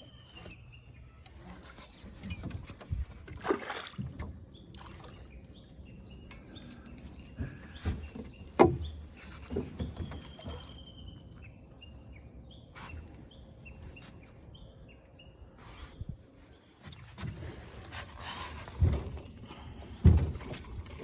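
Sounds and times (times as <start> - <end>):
small birds chirping: 4.0 - 20.5
knocks and thumps: 20.0 - 21.0.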